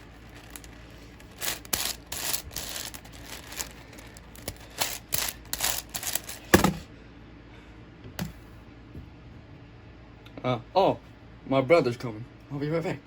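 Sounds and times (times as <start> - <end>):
cube knocking down on surface: 6.5 - 6.8.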